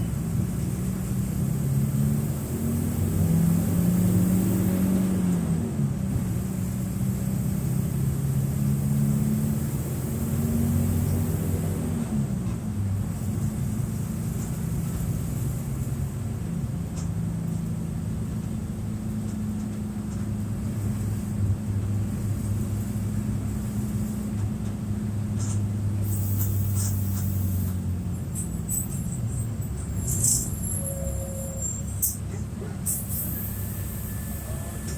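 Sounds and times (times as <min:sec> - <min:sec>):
diesel bus engine droning: 0:00.0 - 0:34.9.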